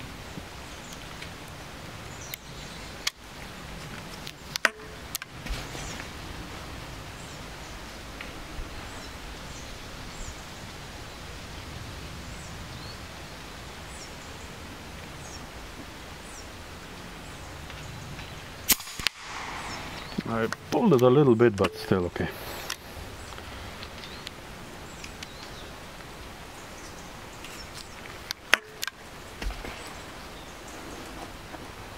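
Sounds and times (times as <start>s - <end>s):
outdoor background: 0.0s - 31.9s
faint bird chirps: 19.2s - 20.6s.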